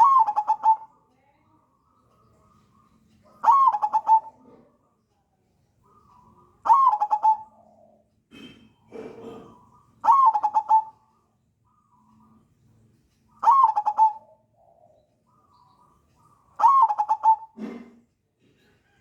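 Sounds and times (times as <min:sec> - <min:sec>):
dove cooing: 0:00.0 - 0:00.9, 0:03.4 - 0:04.6, 0:06.7 - 0:07.9, 0:10.0 - 0:11.0, 0:13.4 - 0:14.9, 0:16.6 - 0:17.9.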